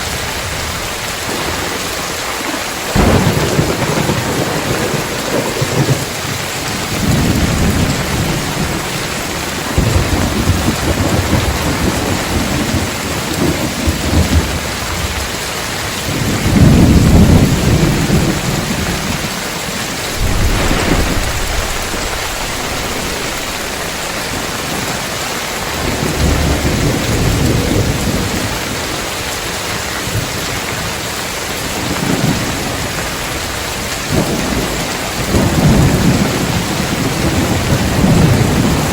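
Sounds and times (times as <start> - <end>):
heavy rain on roof tiles: 0.0 - 38.9
thunder rumbling: 2.8 - 14.6, 20.0 - 28.3.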